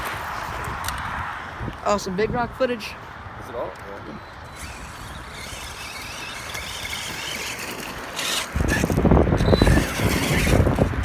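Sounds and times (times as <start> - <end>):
rc truck tyres and motor hiss: 4.2 - 11.0
rough rumble with knocks and scrapes: 4.4 - 11.0.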